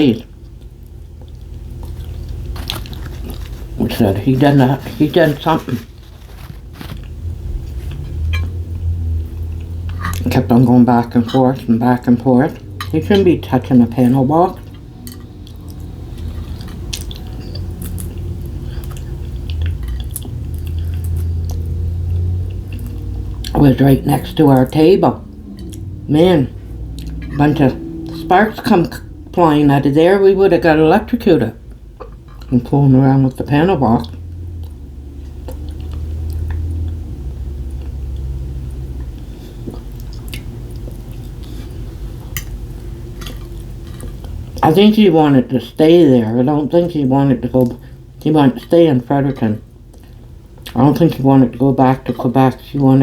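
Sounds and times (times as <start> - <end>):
steady low hum: 0.0 - 53.0
person chewing food: 0.3 - 11.4, 14.0 - 23.6, 26.6 - 29.4, 34.0 - 37.0, 37.6 - 44.6, 49.7 - 50.8.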